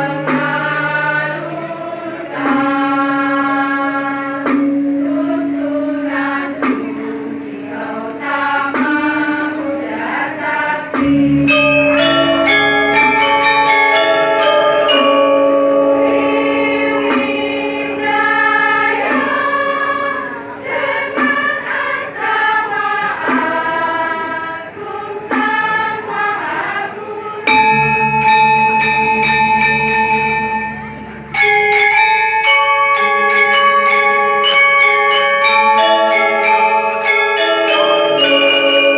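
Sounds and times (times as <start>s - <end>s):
choir singing held chords: 0.0s - 38.9s
deep bass voices: 10.4s - 24.7s.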